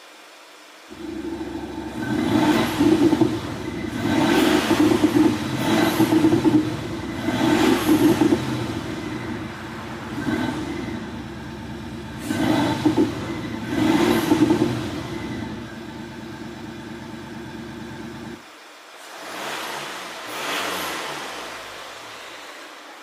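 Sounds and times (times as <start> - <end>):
car engine idling: 0.9 - 18.4
car engine revving: 0.9 - 18.4, 19.0 - 22.7.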